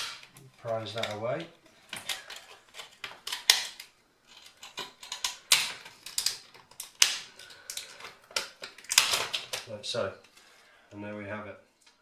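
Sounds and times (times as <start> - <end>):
crackling scrapes of adhesive: 1.8 - 9.7.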